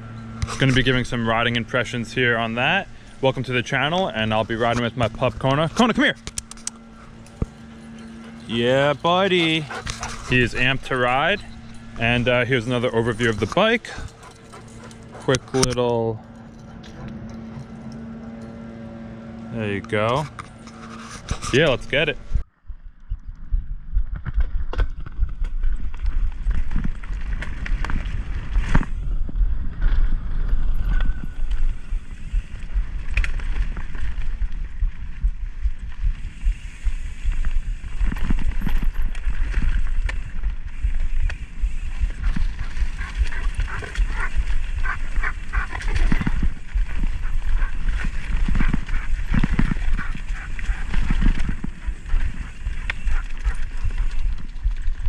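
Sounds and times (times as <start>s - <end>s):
wind rumble on microphone: 21.1s - 55.0s.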